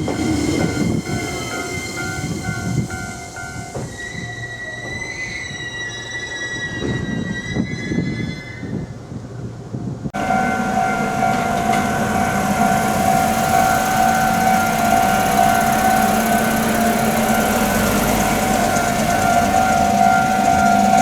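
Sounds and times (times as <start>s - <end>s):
level crossing alarm clanging: 0.0s - 5.6s, 10.2s - 21.0s
passing train: 0.0s - 21.0s.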